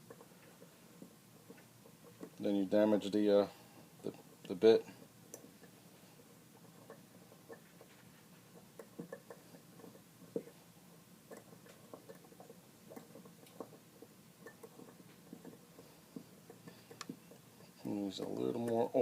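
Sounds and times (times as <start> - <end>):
hand tap clicking and creaking: 11.3 - 17.4.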